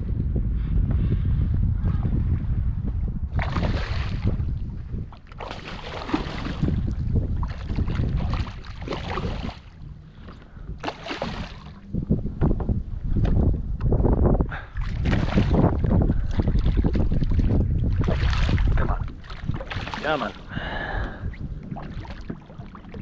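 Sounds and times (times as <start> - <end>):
wind buffeting microphone: 0.0 - 23.0
water splashing: 3.4 - 4.4, 5.2 - 11.9, 14.8 - 23.0.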